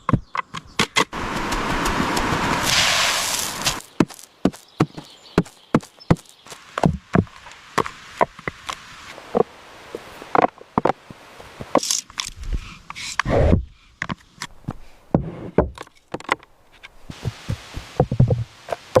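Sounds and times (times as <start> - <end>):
wood knocking and clicking: 15.6 - 17.4.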